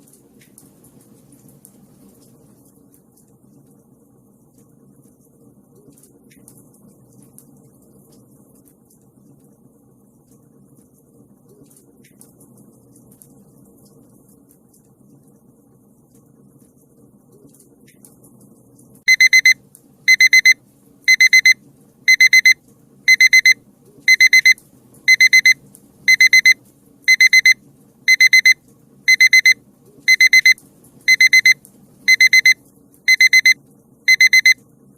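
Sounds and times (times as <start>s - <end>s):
alarm clock beeping: 19.1s - 34.6s.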